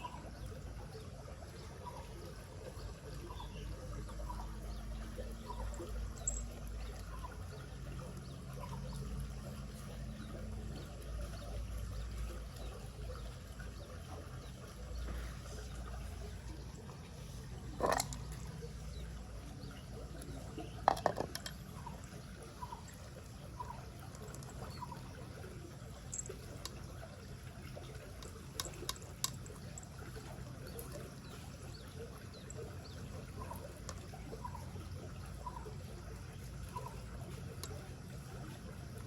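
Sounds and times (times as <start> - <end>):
rushing river water: 0.0 - 39.0.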